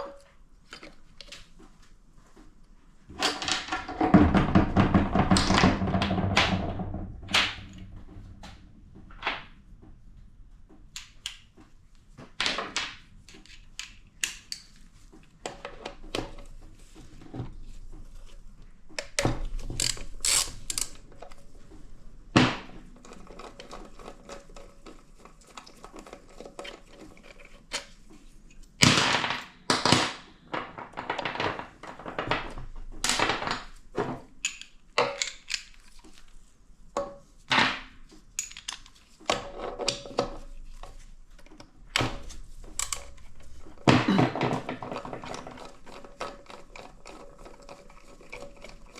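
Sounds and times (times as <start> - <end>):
metal parts and tools clinking: 19.6 - 21.4, 38.4 - 40.5.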